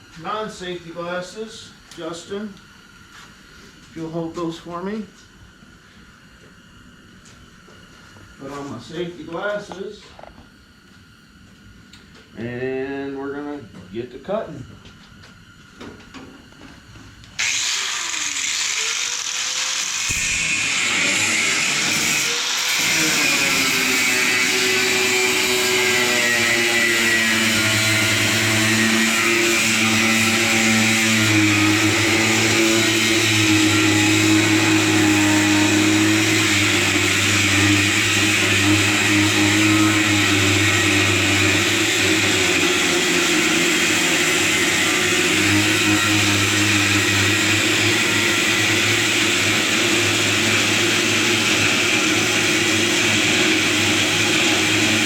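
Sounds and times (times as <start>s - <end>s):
grinder cutoff wheel cutting metal: 17.4s - 55.0s.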